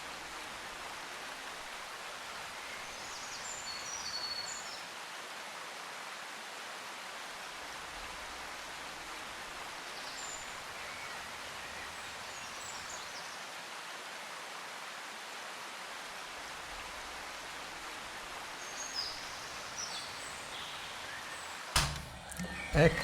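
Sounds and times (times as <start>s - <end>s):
faint high chirps: 19.0s - 23.0s.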